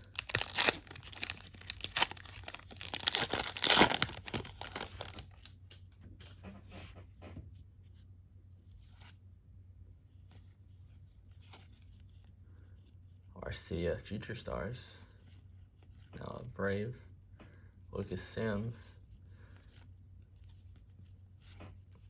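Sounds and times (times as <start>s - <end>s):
wrapper tearing and crinkling: 0.0s - 5.8s
cards being handled: 0.0s - 6.4s.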